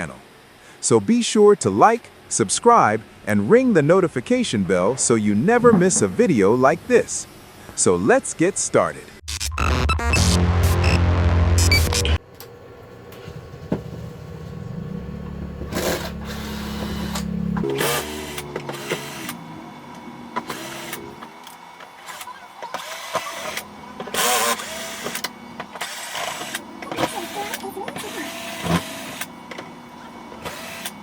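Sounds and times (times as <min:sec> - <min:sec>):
electric screwdriver whirring: 0:30.4 - 0:31.0.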